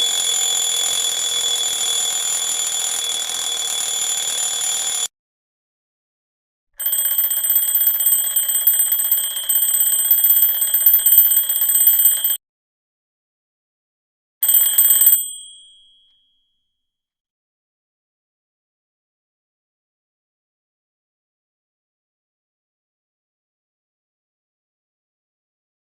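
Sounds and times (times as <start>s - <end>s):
alarm clock ringing: 0.0s - 5.1s, 6.8s - 12.4s, 14.4s - 16.0s.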